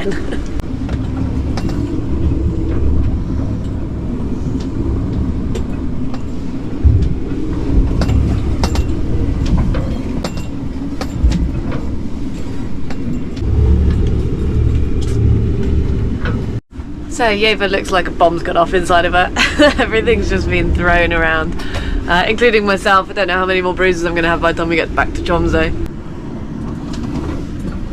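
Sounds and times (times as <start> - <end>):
wind and sea against hull: 0.0 - 27.9
knocks and clicks: 4.6 - 11.9
heavy thumps: 6.8 - 9.8.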